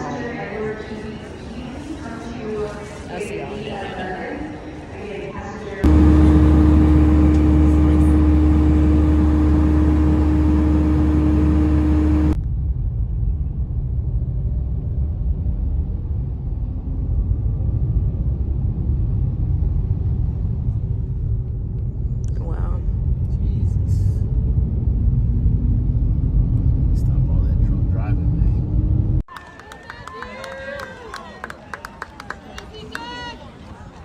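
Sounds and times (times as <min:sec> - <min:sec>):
car road rumble: 0:05.8 - 0:12.4, 0:22.3 - 0:29.2
loud engine drone: 0:05.8 - 0:12.4, 0:24.4 - 0:29.2.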